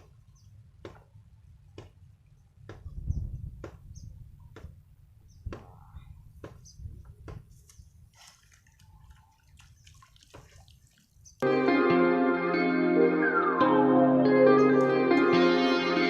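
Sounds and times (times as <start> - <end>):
water dripping: 8.2 - 11.4, 14.5 - 16.0.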